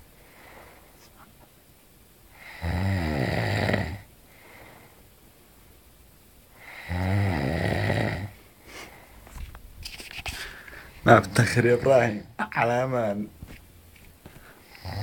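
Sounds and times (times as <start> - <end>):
man snoring loudly: 2.3 - 4.1, 6.6 - 8.4, 14.7 - 15.0.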